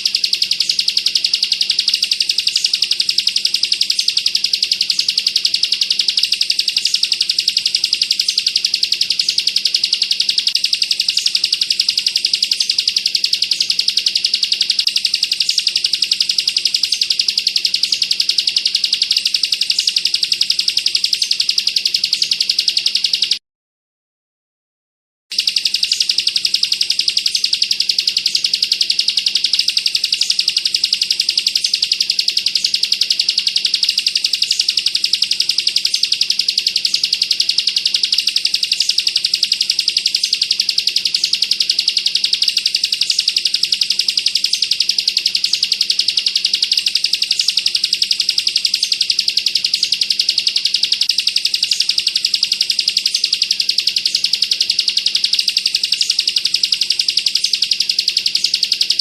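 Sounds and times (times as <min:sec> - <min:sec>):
bird singing high-pitched trill: 0:00.0 - 0:23.4, 0:25.3 - 0:59.0.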